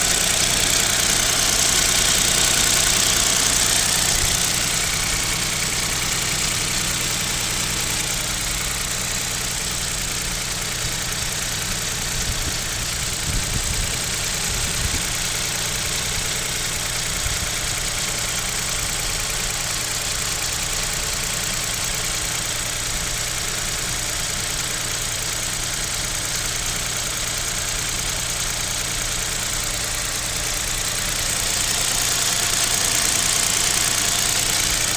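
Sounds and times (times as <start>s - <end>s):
car engine idling: 0.0s - 34.9s
engine knocking: 0.0s - 34.9s.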